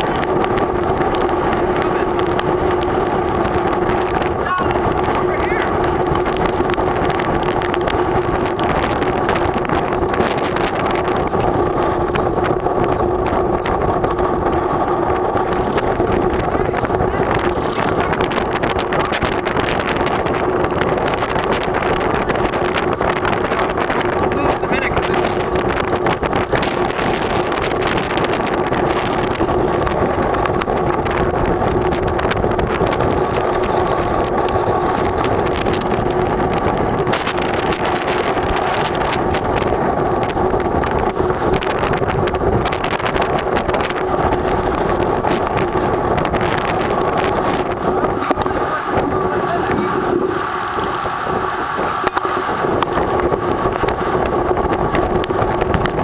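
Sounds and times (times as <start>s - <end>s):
steady hum: 0.0s - 56.0s
wind buffeting microphone: 0.0s - 56.0s.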